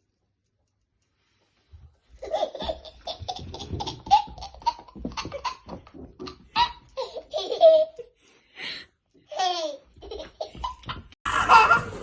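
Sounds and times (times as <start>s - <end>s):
baby laughing: 2.2s - 8.1s, 9.3s - 12.0s.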